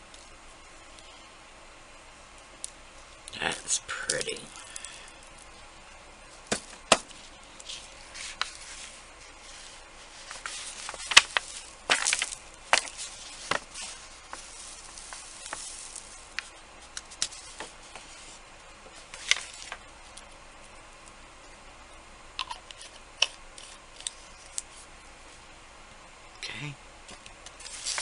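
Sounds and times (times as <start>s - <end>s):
small objects clicking and scraping: 2.6s - 5.6s, 6.4s - 21.2s, 27.4s - 28.0s.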